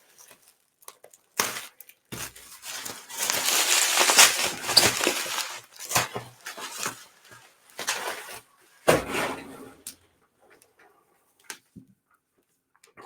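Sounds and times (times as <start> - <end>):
packaging crinkling and rustling: 2.2 - 8.1.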